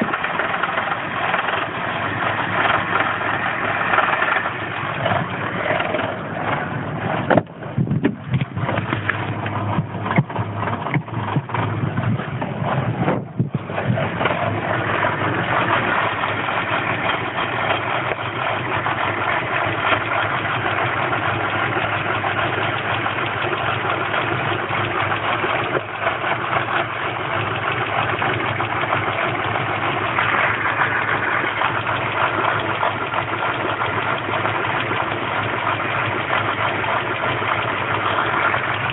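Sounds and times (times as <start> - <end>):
car engine stuttering and surging: 0.0 - 38.9.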